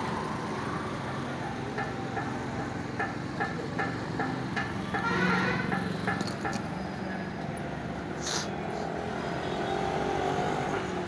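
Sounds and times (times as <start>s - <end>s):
motor vehicle running: 0.0s - 11.0s
short hiss: 8.2s - 8.5s.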